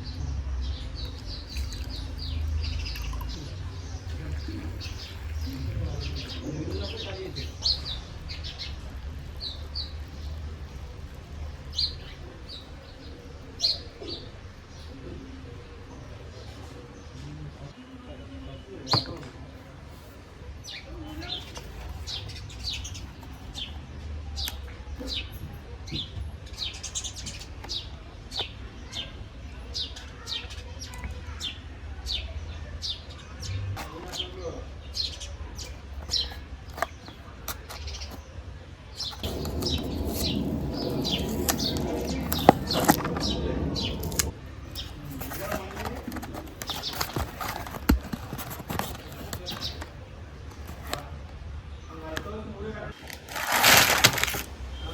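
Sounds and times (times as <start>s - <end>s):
birds chirping: 0.0s - 54.9s.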